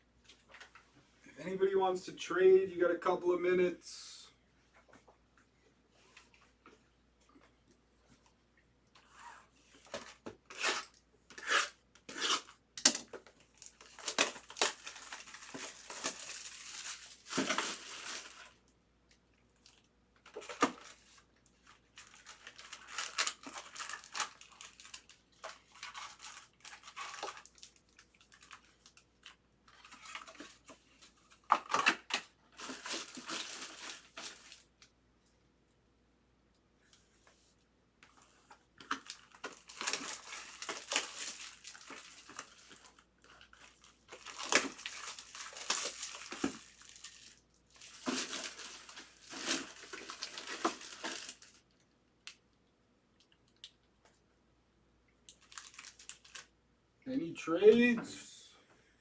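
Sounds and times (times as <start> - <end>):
plastic packaging crinkling and tearing: 9.9 - 18.6, 19.6 - 34.9, 38.8 - 52.4, 55.3 - 56.5.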